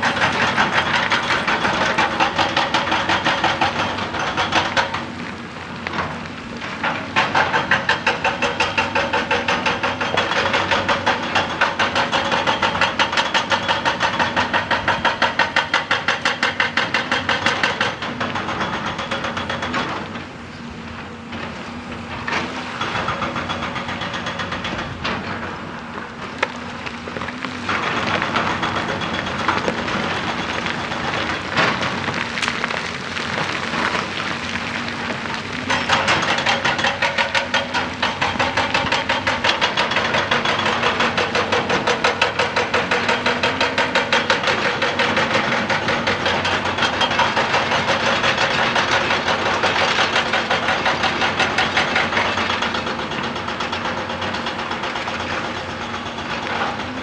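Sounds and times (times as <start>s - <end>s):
hydraulic rock breaker hammering: 0.0s - 5.2s, 6.8s - 57.0s
excavator diesel engine: 0.0s - 57.0s.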